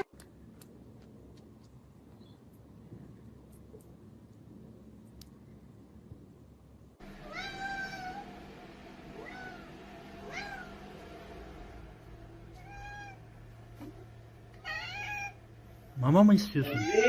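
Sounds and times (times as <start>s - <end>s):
cat meowing: 7.2s - 8.3s, 9.2s - 10.8s, 12.5s - 13.2s, 14.6s - 15.4s, 16.6s - 17.0s.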